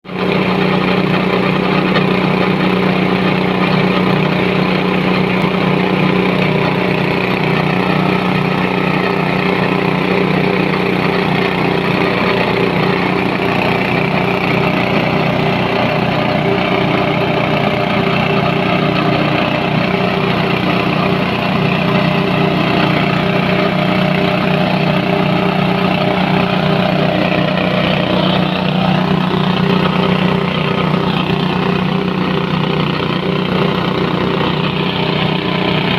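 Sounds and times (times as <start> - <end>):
grinding mill humming: 0.0 - 35.9.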